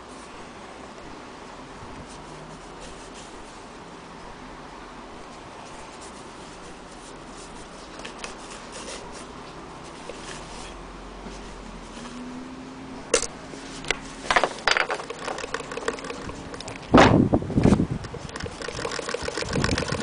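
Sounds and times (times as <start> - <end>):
handling rubbing and clicks: 5.2 - 9.3, 13.2 - 17.0
sharp clicks and knocks: 13.1 - 17.2.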